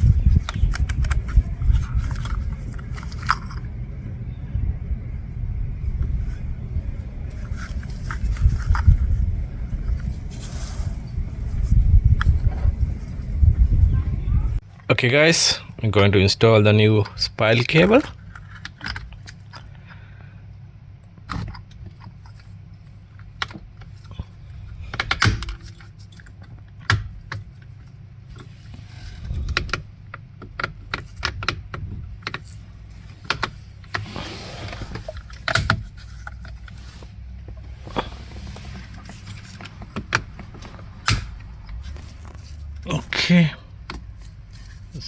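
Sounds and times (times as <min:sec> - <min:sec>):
plastic parts clicking and rattling: 0:00.0 - 0:03.9, 0:07.2 - 0:10.1, 0:17.0 - 0:19.8, 0:21.0 - 0:34.0, 0:34.8 - 0:42.9
steady low hum: 0:00.0 - 0:45.0.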